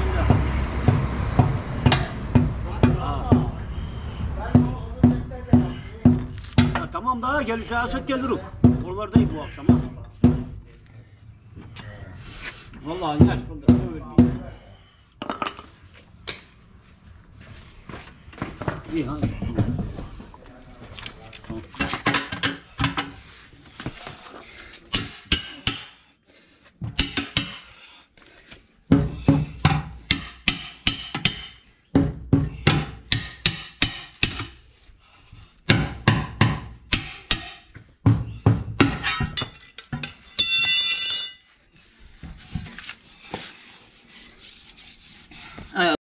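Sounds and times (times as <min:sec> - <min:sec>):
hammer strikes: 0:00.0 - 0:03.6, 0:04.5 - 0:07.0, 0:08.6 - 0:10.7, 0:13.2 - 0:14.5, 0:24.9 - 0:26.0, 0:26.8 - 0:27.6, 0:28.9 - 0:34.6, 0:35.7 - 0:41.5.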